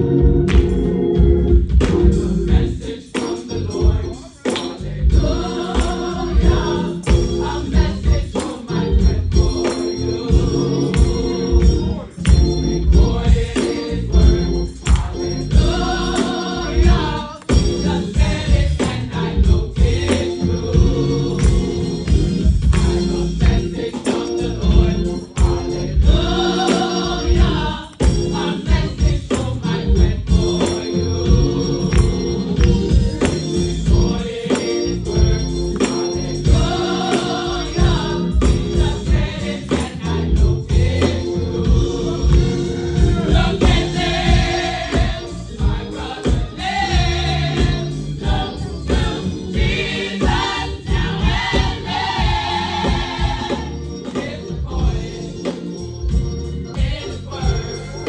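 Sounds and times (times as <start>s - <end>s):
gospel choir singing: 0.0s - 58.0s.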